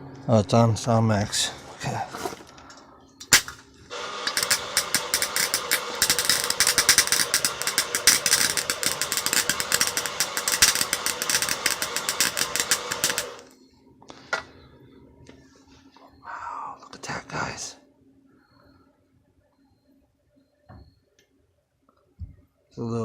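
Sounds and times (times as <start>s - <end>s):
welding arc crackling sizzle: 3.2s - 13.5s.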